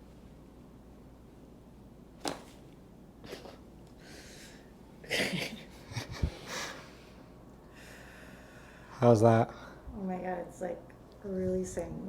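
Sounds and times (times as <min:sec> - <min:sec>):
person breathing noisily: 0:06.2 - 0:08.9.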